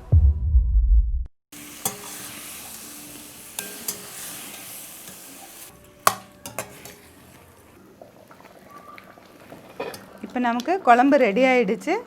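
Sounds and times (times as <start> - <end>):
gravy sizzling in a pan: 1.5 - 11.6
spoon clinking against pan: 1.7 - 7.2.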